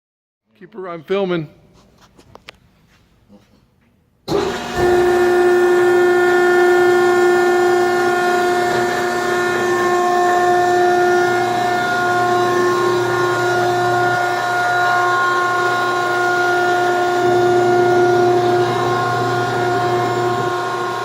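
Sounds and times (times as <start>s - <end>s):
electric motor and pump whine: 4.3s - 21.0s.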